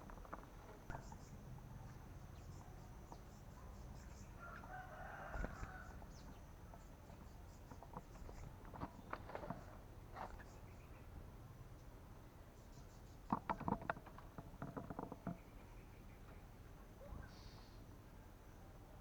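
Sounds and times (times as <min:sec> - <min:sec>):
rooster crowing: 0:04.4 - 0:06.1.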